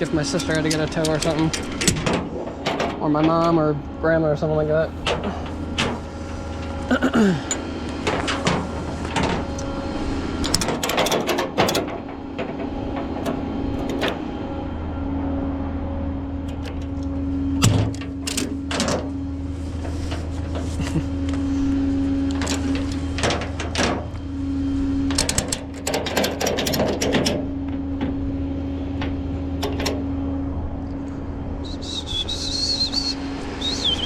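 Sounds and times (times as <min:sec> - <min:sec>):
metallic clicks and clatter: 0:00.0 - 0:03.6, 0:10.4 - 0:14.2, 0:16.4 - 0:19.0, 0:22.3 - 0:24.2, 0:25.1 - 0:28.1, 0:29.0 - 0:30.0
truck engine humming: 0:00.0 - 0:34.0.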